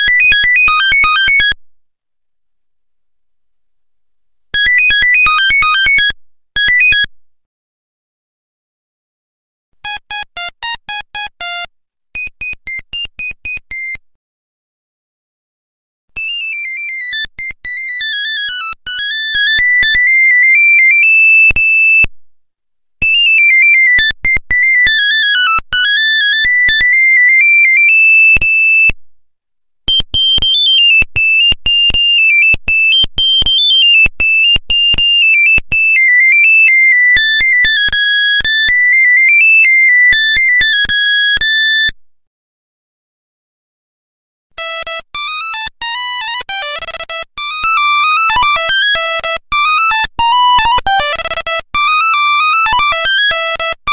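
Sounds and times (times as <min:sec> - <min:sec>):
monophonic ringtone melody: 0:00.0 - 0:01.6, 0:04.6 - 0:07.0, 0:09.8 - 0:13.1, 0:44.6 - 0:53.9.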